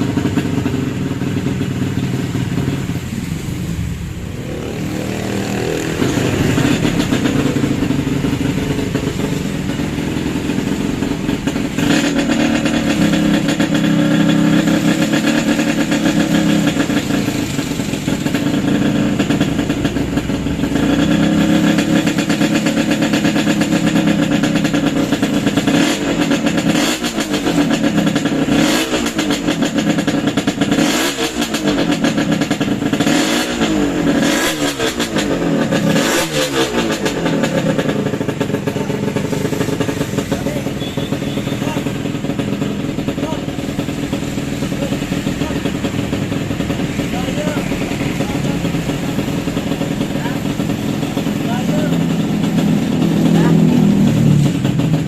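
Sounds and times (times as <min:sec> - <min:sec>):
motorcycle engine idling: 0:00.0 - 0:55.0
motorcycle engine revving: 0:00.0 - 0:55.0.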